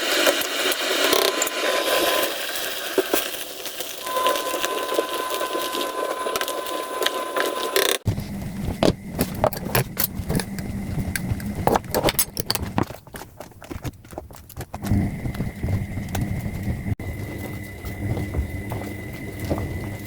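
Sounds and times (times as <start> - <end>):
steady low hum: 4.1 - 13.0, 14.8 - 20.0
kitchen utensils clicking and knocking: 8.8 - 13.0.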